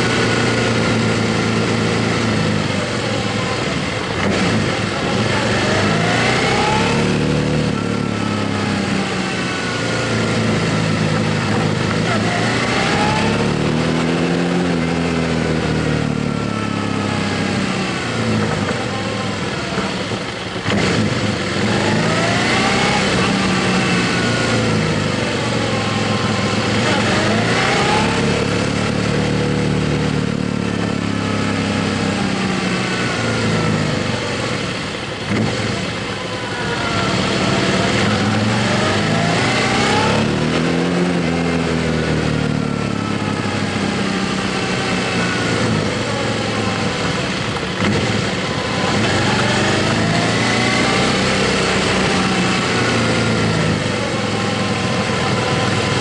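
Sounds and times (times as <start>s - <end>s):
motorcycle engine revving: 0.0s - 56.0s
road and wind noise: 0.0s - 56.0s.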